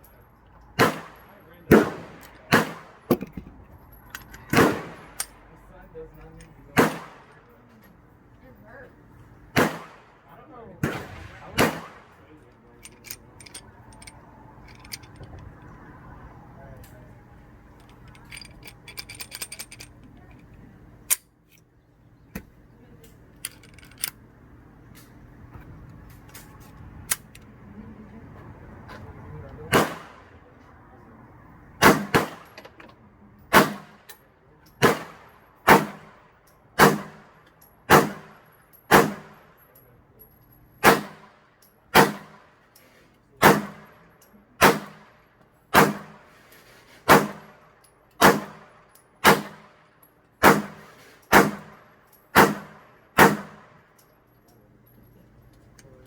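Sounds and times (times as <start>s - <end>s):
handgun shots: 0.8s - 3.3s, 4.5s - 5.3s, 6.8s - 7.3s, 9.6s - 10.0s, 10.8s - 12.2s, 29.7s - 30.2s, 31.8s - 32.5s, 33.5s - 34.0s, 34.8s - 36.1s, 36.8s - 37.2s, 37.9s - 39.4s, 40.8s - 41.3s, 41.9s - 42.4s, 43.4s - 43.9s, 44.6s - 45.0s, 45.7s - 46.2s, 47.1s - 47.5s, 48.2s - 49.7s, 50.4s - 53.7s
metallic rattle: 10.9s - 15.8s, 17.6s - 21.6s, 23.2s - 24.2s.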